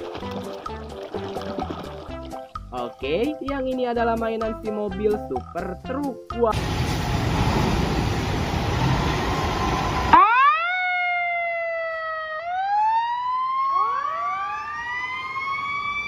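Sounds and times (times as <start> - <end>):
steady rushing noise: 6.6 - 10.2
fire engine siren wailing: 6.6 - 16.0.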